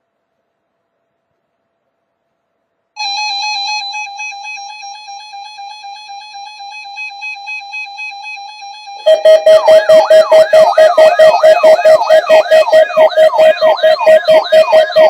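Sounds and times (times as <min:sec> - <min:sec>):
buzzy pulsing electronic alert tone: 0:09.1 - 0:15.0.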